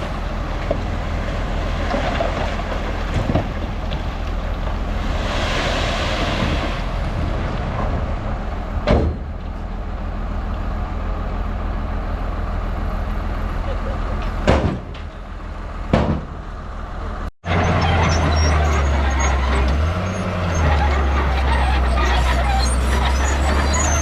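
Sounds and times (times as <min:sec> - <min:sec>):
heavy diesel machinery running: 0:05.8 - 0:24.0.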